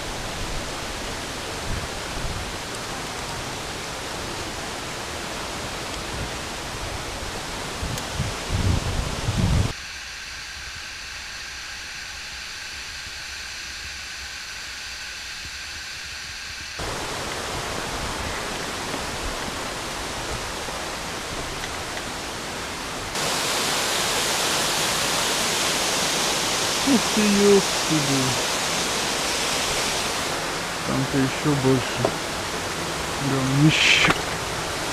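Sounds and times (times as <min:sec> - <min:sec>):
waterfall rushing: 0:16.8 - 0:34.9.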